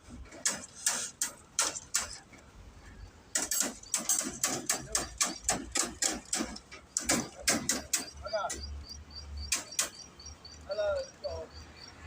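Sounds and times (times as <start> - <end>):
rhythmic hand carpentry strokes: 0.1 - 2.2, 3.3 - 8.6.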